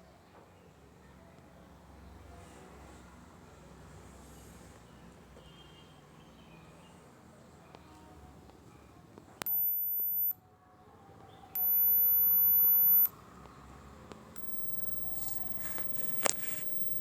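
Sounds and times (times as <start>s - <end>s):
high-pitched electronic tone: 11.6s - 13.1s, 14.4s - 17.0s
sharp click: 14.4s - 17.0s.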